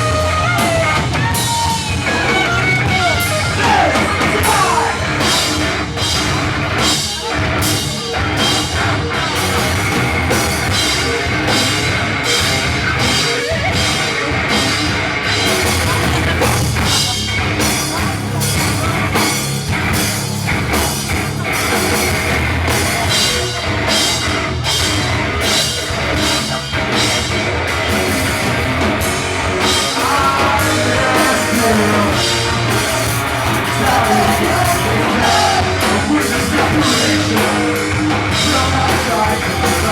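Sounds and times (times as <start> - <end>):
bass guitar: 0.0 - 39.9
distorted electric guitars: 0.0 - 39.9
drum kit with cymbal hits: 0.0 - 39.9
person singing: 29.6 - 39.9.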